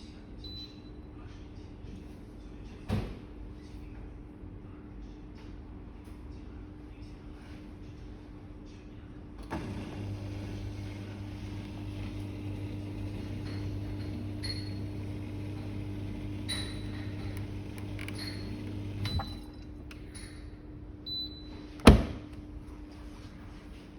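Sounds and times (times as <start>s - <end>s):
dishwasher motor hum: 9.4s - 23.0s.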